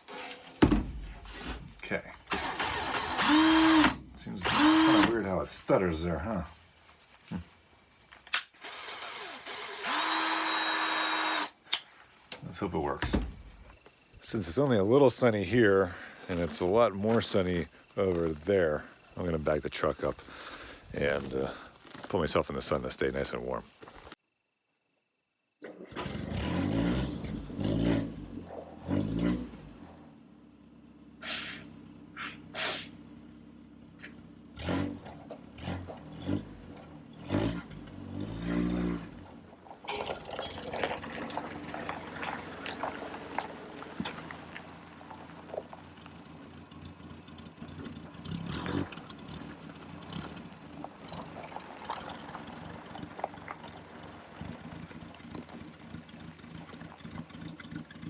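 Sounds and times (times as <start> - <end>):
truck engine revving: 1.2 - 6.6, 25.9 - 39.7, 41.0 - 58.0.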